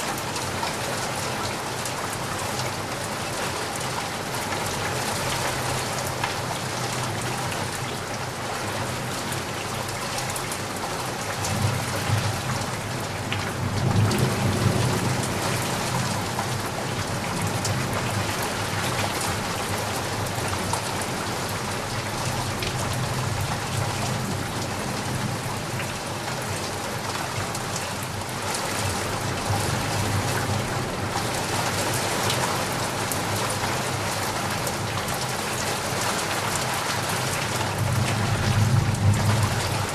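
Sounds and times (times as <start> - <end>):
steady rain falling: 0.0 - 39.9
low rumble of thunder: 11.4 - 18.7, 37.4 - 39.9.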